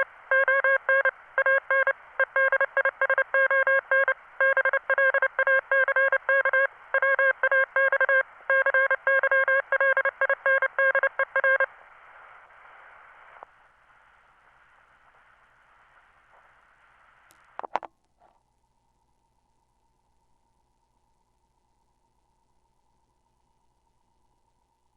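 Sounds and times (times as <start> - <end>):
morse code beeps: 0.0 - 11.7
faint hiss: 11.7 - 17.6.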